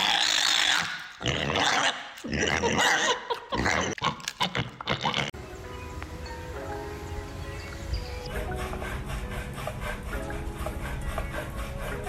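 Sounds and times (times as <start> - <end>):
background music: 5.3 - 12.0.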